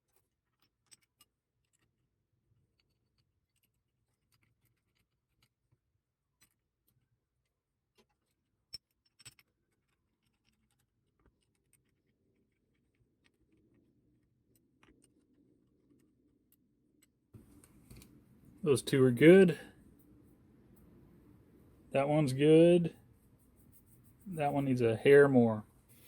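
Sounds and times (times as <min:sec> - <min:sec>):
small metal clicks and taps: 0:00.1 - 0:02.0, 0:06.4 - 0:13.6.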